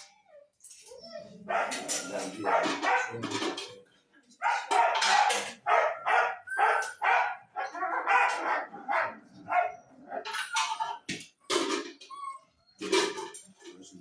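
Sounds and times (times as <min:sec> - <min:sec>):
dogs barking: 0:01.0 - 0:03.7, 0:04.4 - 0:11.1.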